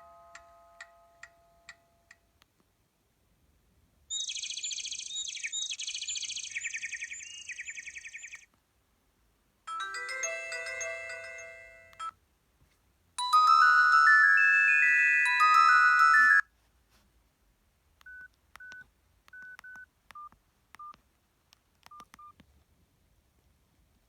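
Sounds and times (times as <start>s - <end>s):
fast chirping trill ringtone: 9.7s - 12.1s, 13.2s - 16.4s
melodic ringtone: 9.7s - 12.1s, 13.2s - 16.5s.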